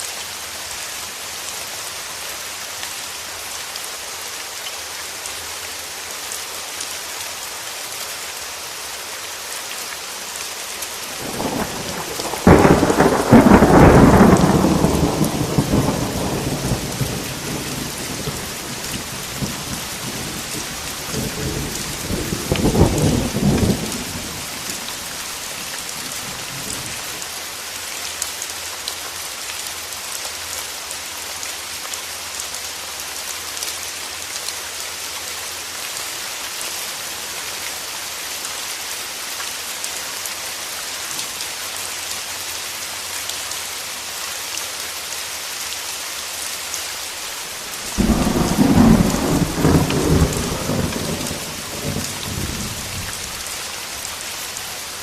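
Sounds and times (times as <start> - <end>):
steady rain: 0.0 - 55.0
thunder rumbling: 11.2 - 27.0, 47.7 - 53.6.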